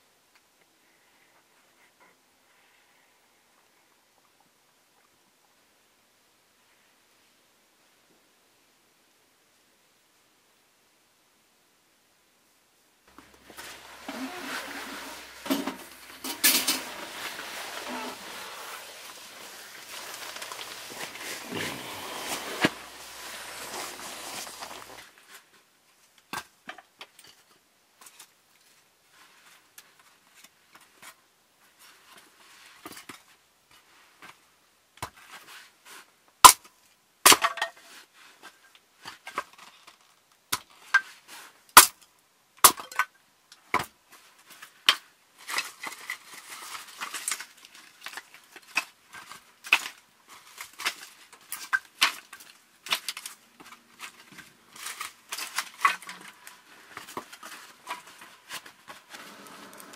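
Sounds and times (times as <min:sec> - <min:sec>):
rustling hiss: 0:13.1 - 0:25.5, 0:53.8 - 0:59.9.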